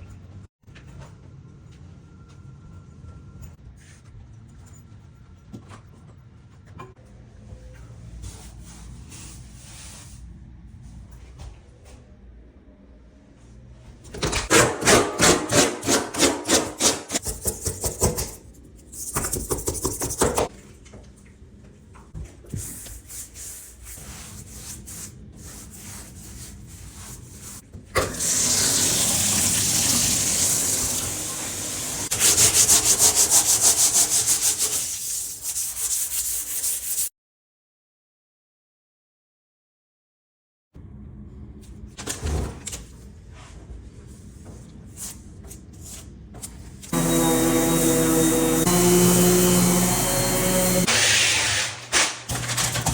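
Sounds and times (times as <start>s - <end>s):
sandpaper rubbing on a bathtub: 22.6s - 27.6s, 32.0s - 37.1s.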